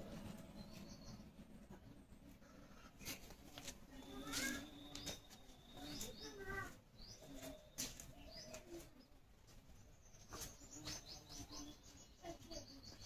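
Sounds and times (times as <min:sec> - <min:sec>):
bird chirps: 0:00.1 - 0:01.4, 0:03.9 - 0:09.1, 0:09.8 - 0:13.0.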